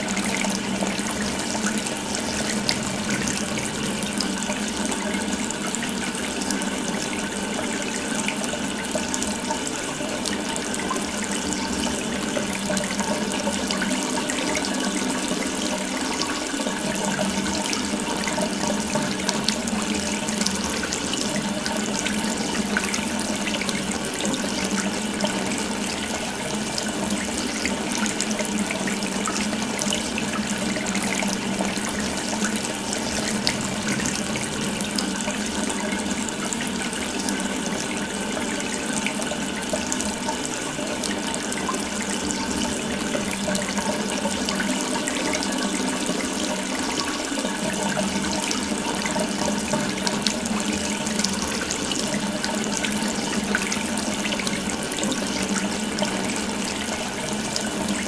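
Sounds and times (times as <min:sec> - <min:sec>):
water running from a tap: 0:00.0 - 0:58.0.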